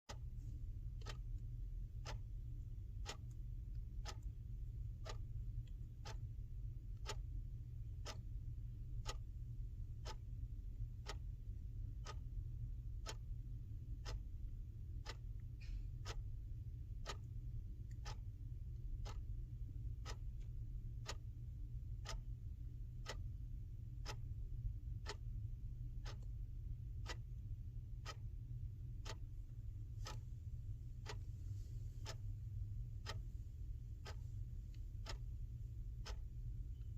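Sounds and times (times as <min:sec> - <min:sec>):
clock ticking: 0:00.1 - 0:36.9
faint low hum: 0:00.1 - 0:36.9.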